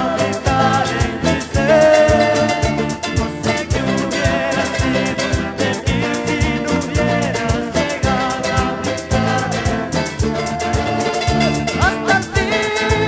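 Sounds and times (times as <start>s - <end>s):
guitar: 0.0s - 13.0s
latin band music: 0.0s - 13.0s
steady drum beat: 0.0s - 13.0s.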